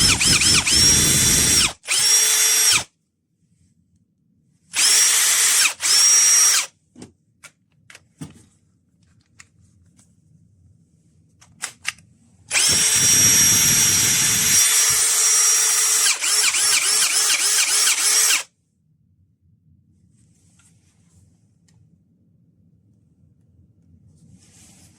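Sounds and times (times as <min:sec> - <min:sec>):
cordless drill motor whine: 0:00.0 - 0:02.9, 0:04.8 - 0:06.7, 0:12.5 - 0:18.5
drill clicks: 0:00.0 - 0:02.9, 0:04.8 - 0:06.7, 0:12.5 - 0:18.4.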